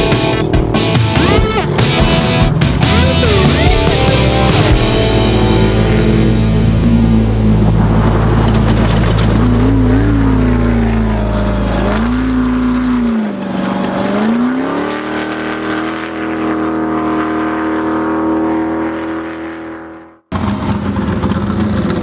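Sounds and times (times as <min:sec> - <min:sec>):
steady low hum: 0:00.0 - 0:14.0
race vehicle engine revving: 0:00.0 - 0:22.0.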